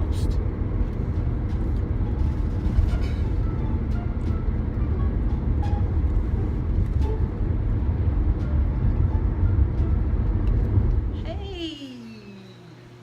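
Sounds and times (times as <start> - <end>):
car road and engine rumble: 0.0 - 11.7.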